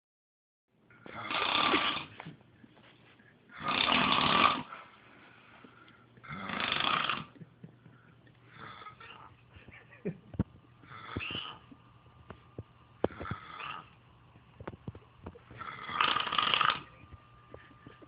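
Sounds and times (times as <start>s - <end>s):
person snoring loudly: 1.0s - 2.2s, 3.5s - 4.7s, 6.2s - 7.4s, 8.5s - 9.3s, 10.8s - 11.6s, 13.1s - 13.9s, 15.6s - 16.9s
quiet breaths: 4.6s - 6.3s.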